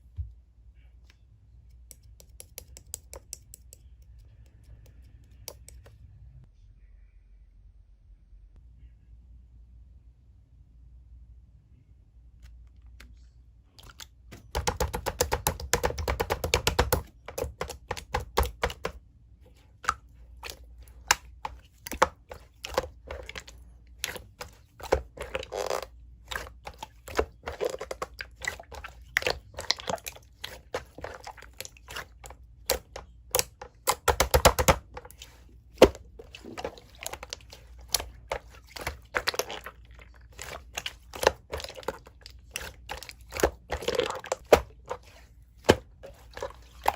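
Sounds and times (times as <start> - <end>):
slime clicking and squelching: 1.7 - 5.9, 13.8 - 46.9.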